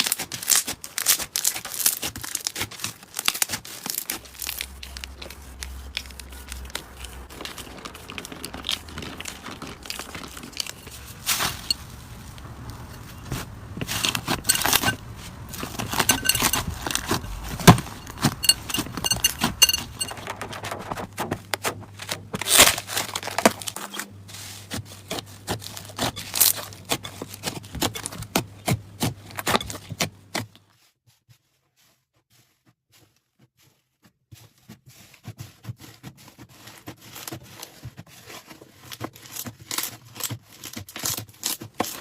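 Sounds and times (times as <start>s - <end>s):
slime crackling and popping: 0.0s - 18.5s.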